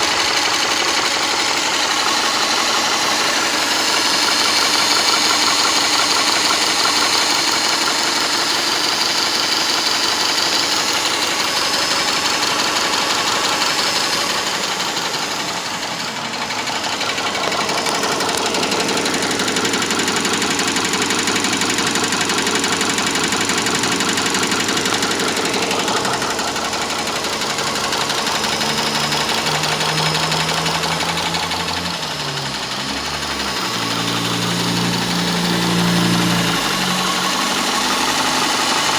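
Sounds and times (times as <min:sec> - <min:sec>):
engine running with fast ticking: 0:00.0 - 0:38.9
deeper engine tone: 0:10.8 - 0:38.9.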